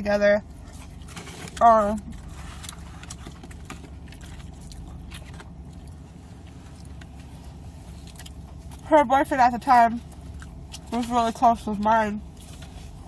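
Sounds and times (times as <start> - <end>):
low hum: 0.0 - 13.0
person chewing: 0.7 - 8.9, 10.0 - 11.1.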